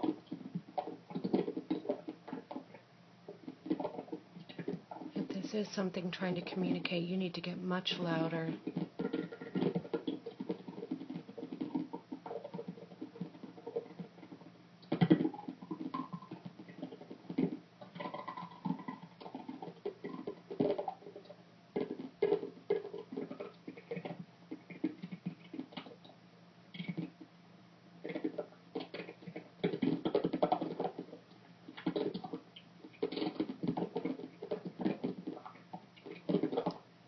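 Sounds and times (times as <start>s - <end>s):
tapping clicking and scratching: 0.0s - 26.2s.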